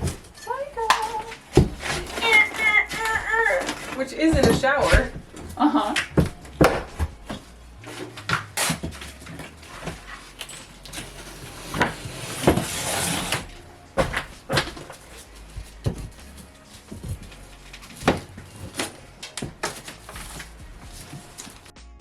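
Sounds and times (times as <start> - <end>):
demolition knocks and bangs: 0.0 - 7.4
material scraping and crunching: 0.0 - 21.7.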